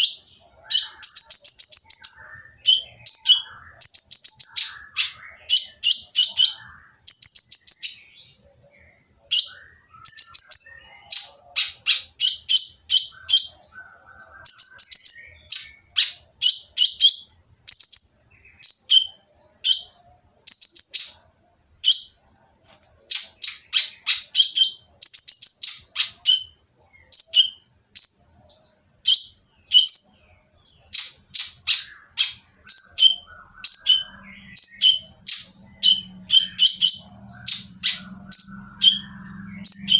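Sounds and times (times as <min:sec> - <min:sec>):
bird chirping harshly: 0:00.0 - 0:39.9.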